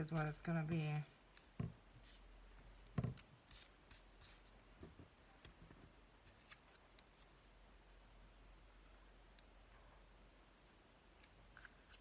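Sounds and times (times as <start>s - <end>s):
soft knock on table: 1.6s - 1.8s, 3.0s - 3.2s.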